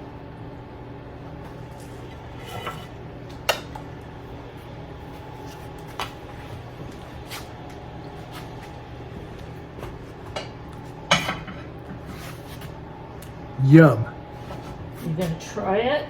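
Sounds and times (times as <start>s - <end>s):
utensils clinking against dishes: 11.1s - 11.7s.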